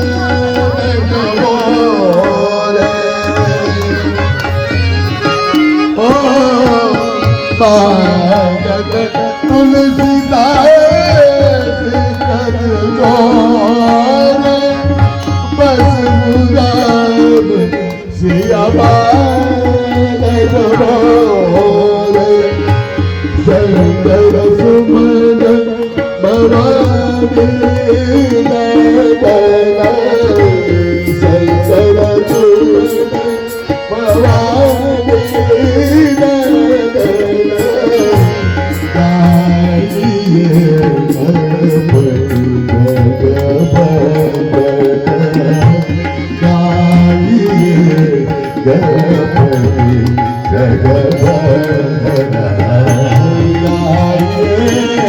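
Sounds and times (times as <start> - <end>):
devotional singing: 0.0 - 5.2, 6.0 - 55.0
hand drums playing rhythm: 0.0 - 55.0.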